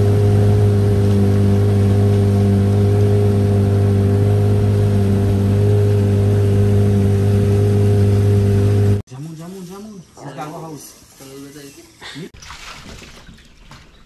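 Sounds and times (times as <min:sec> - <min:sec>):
engine droning steadily: 0:00.0 - 0:09.0.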